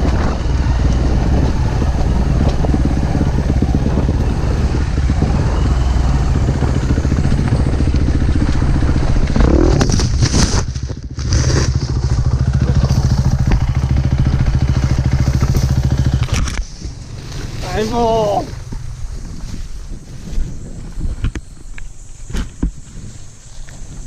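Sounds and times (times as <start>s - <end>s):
dirt bike engine running: 0.0s - 21.7s
rough scraping: 5.2s - 20.5s.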